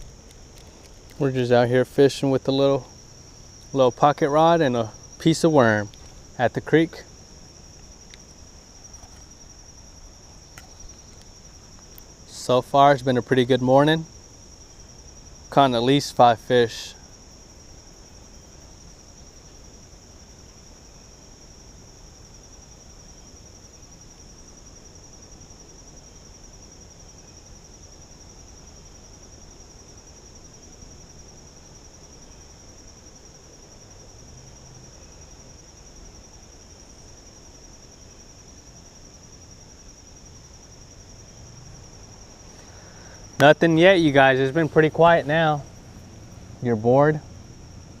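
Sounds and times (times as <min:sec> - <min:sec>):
insects trilling: 0:00.0 - 0:48.0.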